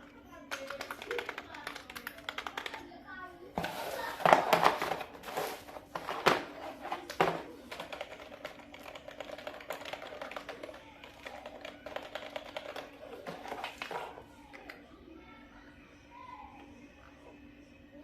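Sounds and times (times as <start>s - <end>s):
keyboard typing clicks: 0.5s - 2.8s.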